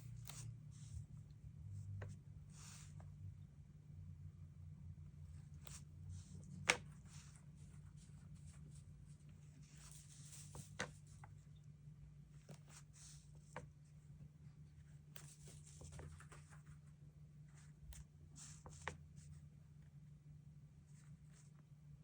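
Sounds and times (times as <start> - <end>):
low steady hum: 0.0 - 22.0
paper rustling: 5.4 - 11.5, 15.0 - 19.3.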